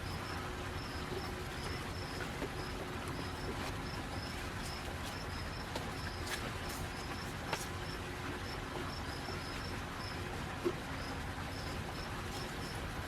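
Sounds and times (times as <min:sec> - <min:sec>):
cricket chirping: 0:00.0 - 0:06.2, 0:11.0 - 0:12.8
low background hum: 0:00.0 - 0:13.0.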